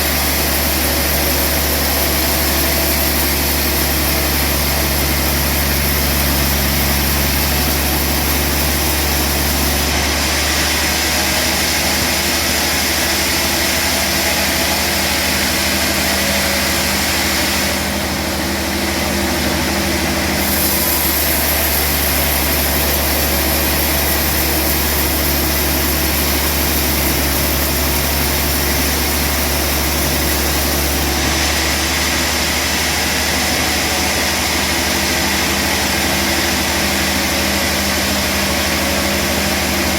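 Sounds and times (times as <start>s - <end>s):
sawmill machinery humming and hissing: 0.0s - 39.9s.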